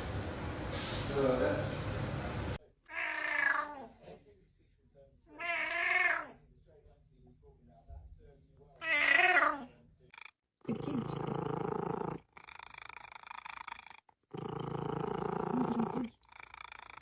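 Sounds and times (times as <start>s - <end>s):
cat meowing: 2.9s - 3.9s, 5.3s - 6.4s, 8.8s - 12.1s
cat purring: 8.8s - 17.0s.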